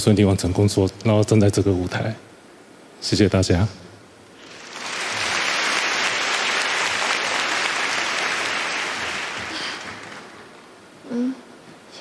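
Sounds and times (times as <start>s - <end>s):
audience applauding: 4.4s - 10.7s.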